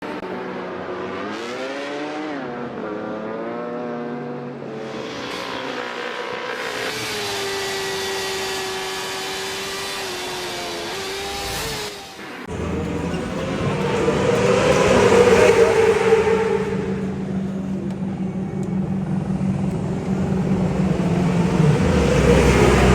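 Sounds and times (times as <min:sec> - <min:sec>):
motorbike engine revving high: 0:00.6 - 0:17.8, 0:19.3 - 0:22.9.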